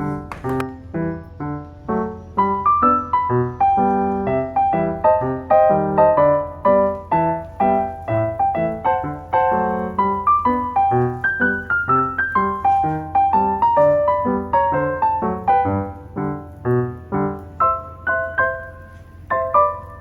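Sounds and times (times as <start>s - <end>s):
piano music: 0.0s - 20.0s.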